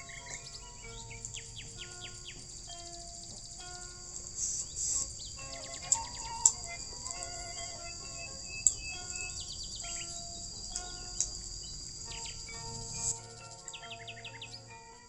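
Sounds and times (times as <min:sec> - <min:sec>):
bird chirps: 0:00.0 - 0:15.0
insect drone: 0:00.0 - 0:15.0.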